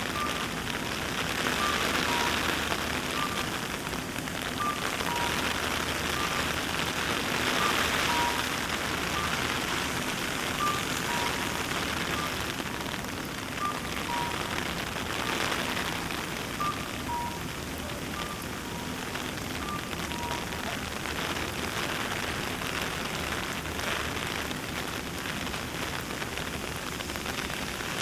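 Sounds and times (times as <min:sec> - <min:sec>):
rain pattering: 0:00.0 - 0:28.0
two-note electronic beep: 0:01.5 - 0:03.5, 0:04.6 - 0:06.8, 0:07.5 - 0:12.5, 0:13.6 - 0:20.8.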